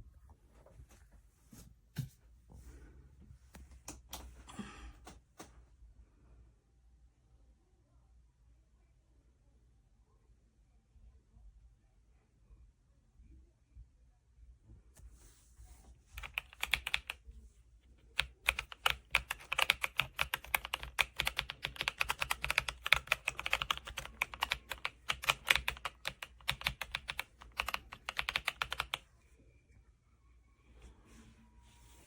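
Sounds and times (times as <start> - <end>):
mechanical keyboard keystroke clacks: 16.2 - 17.2, 18.2 - 29.0.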